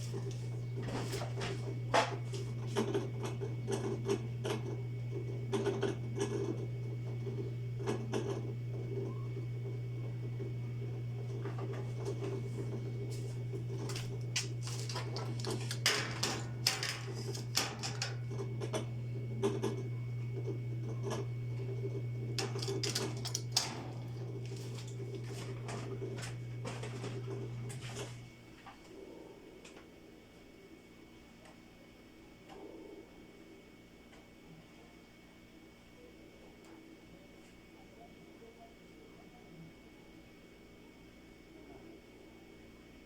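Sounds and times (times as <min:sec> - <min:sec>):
steady low hum: 0:00.0 - 0:43.0
hard objects clicking and clinking: 0:22.4 - 0:25.0.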